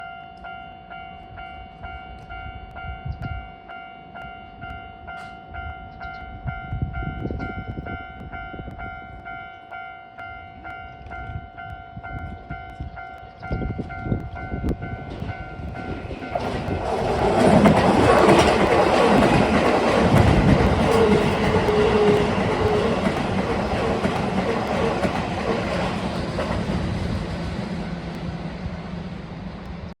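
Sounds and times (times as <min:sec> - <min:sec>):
electric train rumbling: 0:00.0 - 0:30.0
level crossing alarm ringing: 0:07.8 - 0:25.5
wheels clattering over rail joints: 0:15.0 - 0:27.8.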